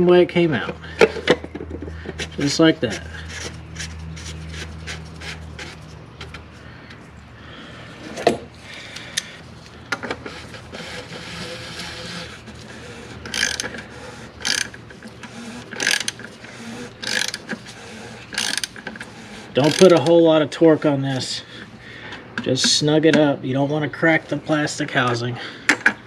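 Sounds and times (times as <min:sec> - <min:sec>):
socket ratchet clicking: 0:13.2 - 0:13.8, 0:14.4 - 0:14.8, 0:15.6 - 0:16.2, 0:17.0 - 0:17.6, 0:18.3 - 0:20.1.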